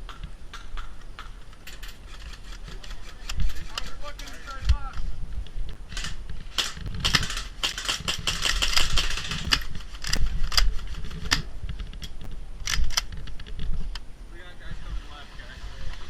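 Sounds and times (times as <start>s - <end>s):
low microphone rumble: 4.5s - 16.0s.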